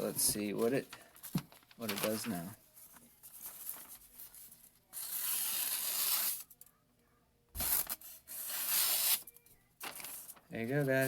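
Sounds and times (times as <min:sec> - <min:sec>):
knife slicing paper: 0:07.6 - 0:09.2.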